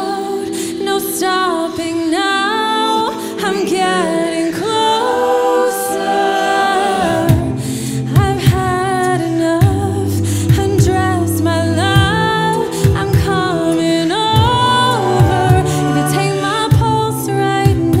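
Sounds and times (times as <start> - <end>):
vocal group singing harmonies: 0.0 - 18.0
beatboxed kick-drum thumps: 7.2 - 18.0
deep bass voice: 9.6 - 17.0.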